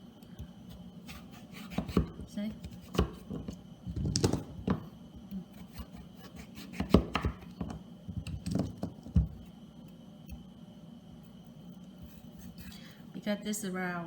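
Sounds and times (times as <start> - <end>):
knife cutting through squash: 1.0 - 3.4, 5.5 - 7.4.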